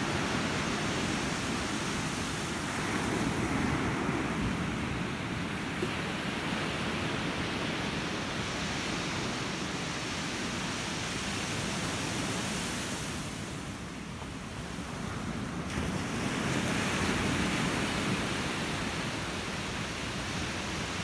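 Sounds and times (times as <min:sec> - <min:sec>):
ocean waves breaking: 0:14.7 - 0:21.0.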